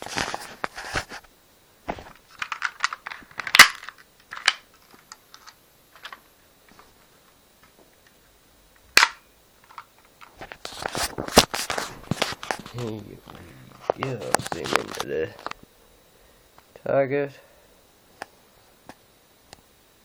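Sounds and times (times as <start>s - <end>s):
airsoft pistol plastic clicks: 9.0s - 9.9s.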